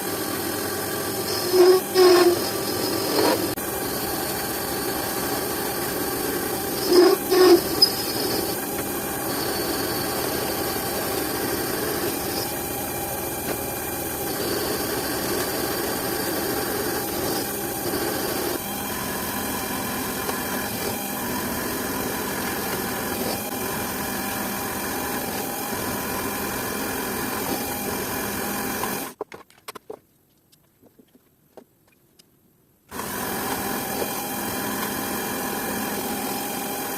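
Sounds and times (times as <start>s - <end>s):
power tool running: 0.0s - 29.2s, 32.9s - 36.9s
sharp squeals: 1.2s - 12.7s.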